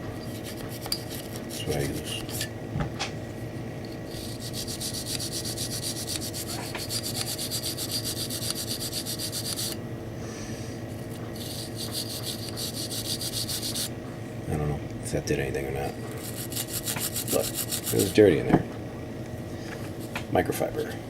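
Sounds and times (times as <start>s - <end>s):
toothbrush scrubbing metal: 0.2s - 2.5s, 4.1s - 9.8s, 11.1s - 13.9s, 16.2s - 18.3s.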